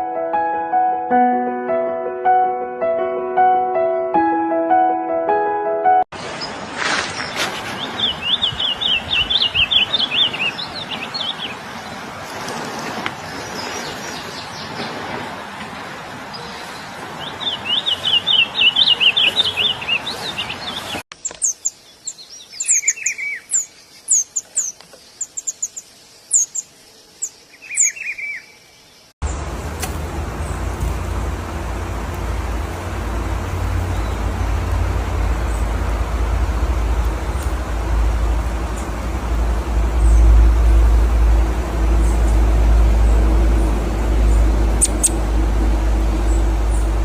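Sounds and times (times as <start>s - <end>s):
songbirds singing and calling: 6.2s - 15.2s, 16.3s - 47.0s
low rumble: 29.2s - 47.0s.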